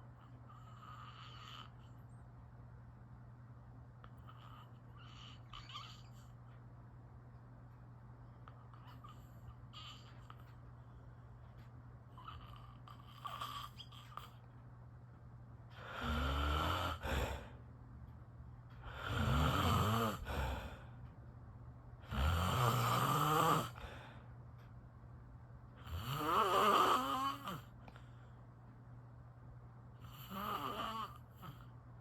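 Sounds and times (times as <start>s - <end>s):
person snoring: 15.8s - 17.6s, 18.8s - 20.9s, 22.0s - 24.0s, 25.8s - 27.8s, 30.0s - 31.6s.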